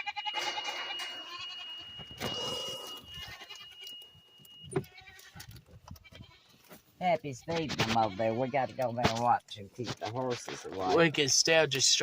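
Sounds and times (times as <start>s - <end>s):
goats bleating: 0.0s - 4.0s, 4.8s - 6.6s.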